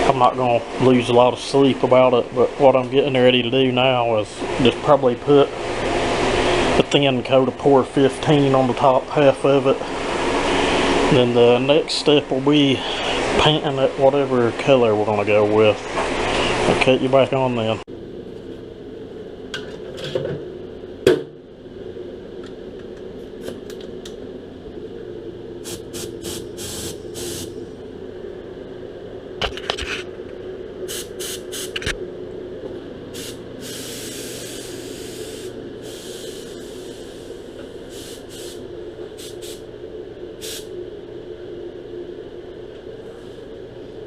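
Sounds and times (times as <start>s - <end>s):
low hum: 17.8s - 44.0s
spray gun hissing: 25.6s - 27.6s, 30.9s - 31.8s, 33.2s - 38.6s, 39.2s - 39.7s, 40.4s - 40.7s.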